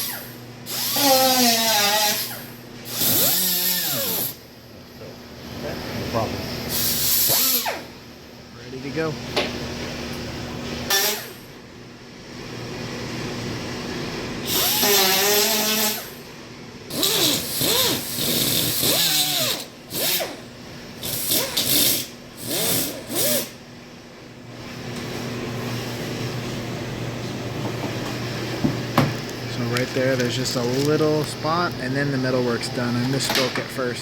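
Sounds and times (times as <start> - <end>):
power tool motor: 0.0 - 4.4, 6.7 - 7.9, 10.9 - 11.4, 14.5 - 16.2, 16.9 - 20.4, 21.0 - 23.6
shop hum: 0.0 - 34.0.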